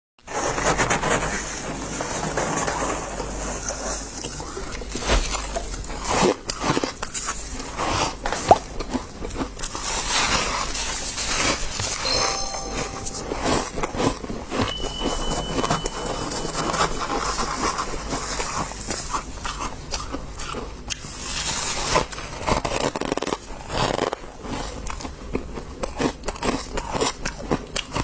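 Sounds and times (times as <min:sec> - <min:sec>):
chewing ice: 0:04.2 - 0:11.3, 0:18.8 - 0:28.0.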